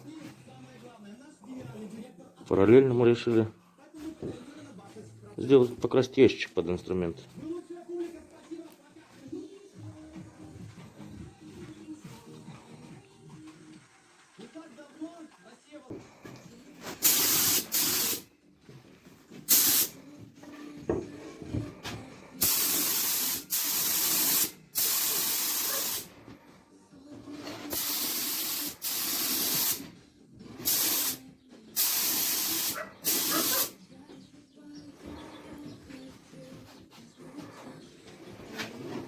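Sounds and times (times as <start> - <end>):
spray paint hissing bursts: 17.0 - 18.3, 19.5 - 20.0, 22.4 - 26.1, 27.7 - 29.8, 30.6 - 31.2, 31.8 - 33.8.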